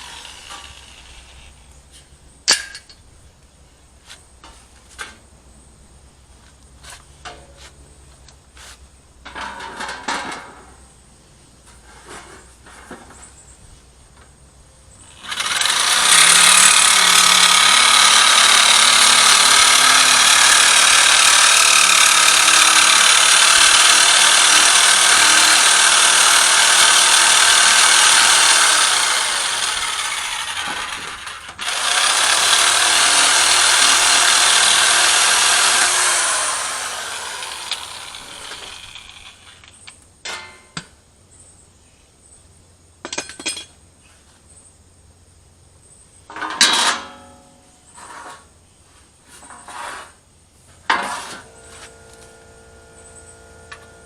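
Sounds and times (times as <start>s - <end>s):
power tool whining: 0.0s - 1.6s, 15.0s - 39.8s, 50.9s - 54.0s.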